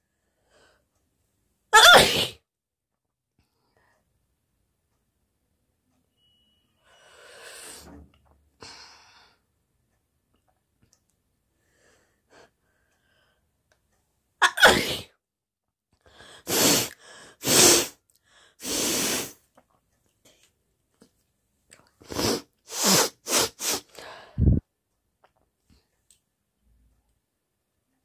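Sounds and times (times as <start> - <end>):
woman sneezing: 1.8 - 2.4, 14.4 - 15.1
faint breathing: 23.9 - 24.6.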